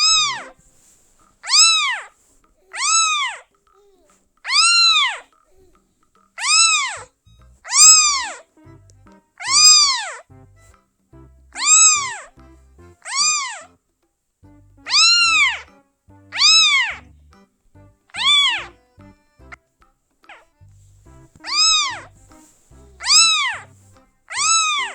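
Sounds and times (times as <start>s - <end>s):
kitten meowing: 0.0s - 0.6s, 1.4s - 5.8s, 6.4s - 8.4s, 9.4s - 10.2s, 11.6s - 12.4s, 13.0s - 13.7s, 14.8s - 17.2s, 18.1s - 19.6s, 20.3s - 24.9s.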